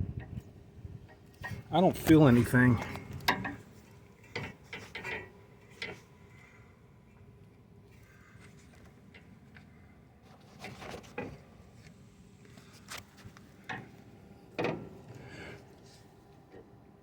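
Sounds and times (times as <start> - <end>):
suspension parts knocking and clattering: 1.0 - 6.2, 13.6 - 15.2.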